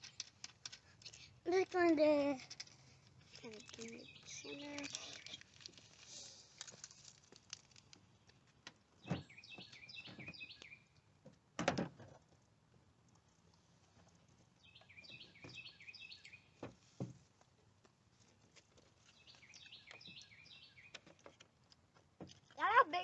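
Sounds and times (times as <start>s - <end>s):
songbird singing: 3.4s - 6.3s, 8.0s - 11.2s, 14.5s - 16.8s, 19.0s - 21.8s.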